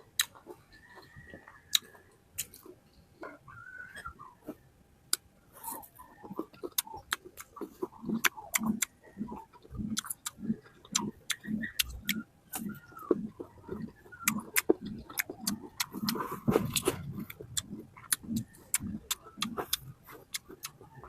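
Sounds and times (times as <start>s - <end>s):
chewing fruit: 0.0s - 21.0s
wet mouth clicks and lip smacks: 0.2s - 0.4s, 1.7s - 2.6s, 6.3s - 20.9s.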